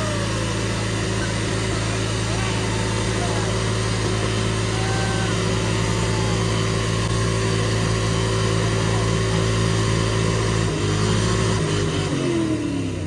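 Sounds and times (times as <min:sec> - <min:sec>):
car engine running: 0:00.0 - 0:13.0.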